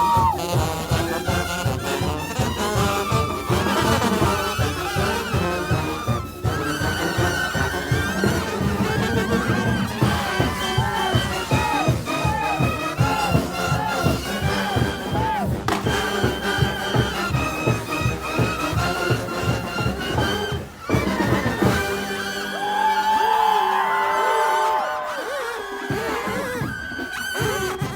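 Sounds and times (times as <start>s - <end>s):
bass and drum beat: 0.0s - 21.9s
trumpets and trombones: 0.0s - 27.9s.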